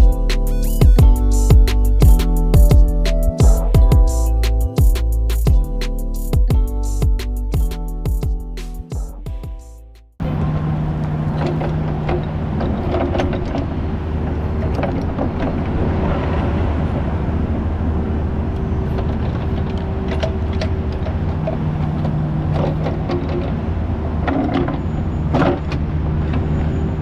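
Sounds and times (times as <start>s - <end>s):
diesel engine running: 0.0s - 27.0s
metal clanks and knocks: 10.4s - 13.8s, 19.0s - 23.6s.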